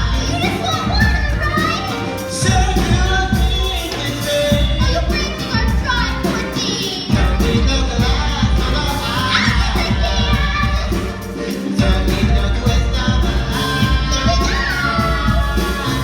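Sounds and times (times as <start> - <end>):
band accompaniment: 0.0 - 16.0
musical theatre singing: 0.0 - 16.0
deep bass pulsing: 11.8 - 16.0.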